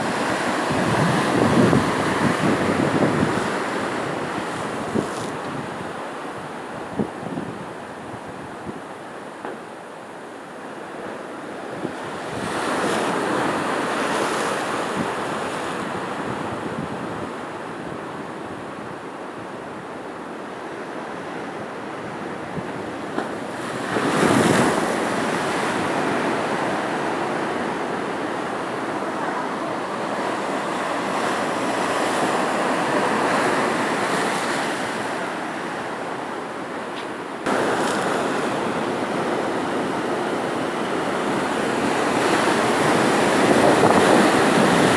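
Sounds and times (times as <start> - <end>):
sea waves breaking on shore: 0.0 - 6.8, 19.3 - 44.9
wind: 0.0 - 44.9.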